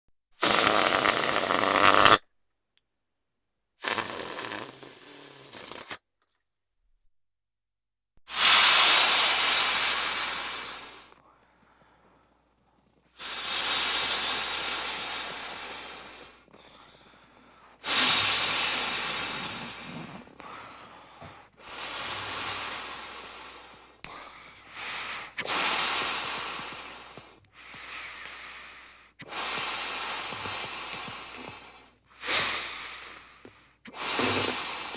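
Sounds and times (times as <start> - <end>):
air hissing out of balloon: 0.4 - 2.2, 3.8 - 6.0, 8.3 - 11.2, 13.2 - 16.5, 17.8 - 20.7, 21.5 - 34.9.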